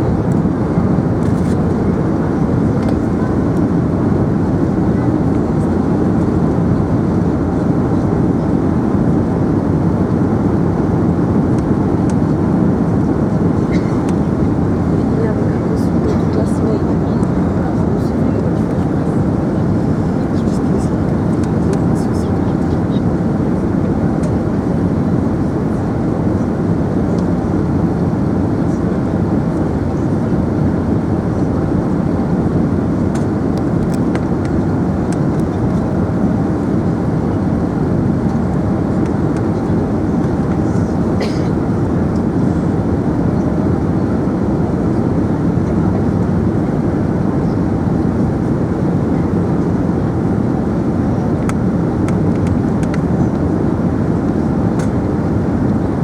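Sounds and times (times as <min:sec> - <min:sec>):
airplane cabin engine rumble: 0:00.0 - 0:56.0.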